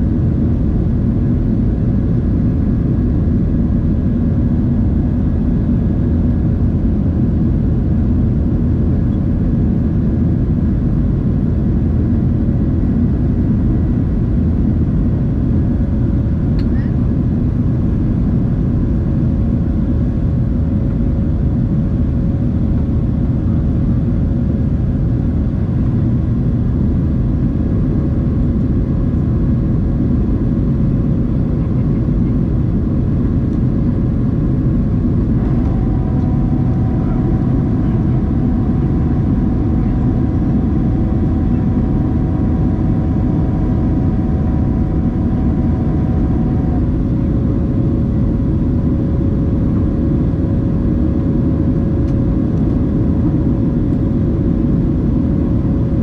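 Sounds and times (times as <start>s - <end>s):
jet engine cabin rumble: 0.0s - 56.0s
higher steady engine tones: 21.7s - 56.0s.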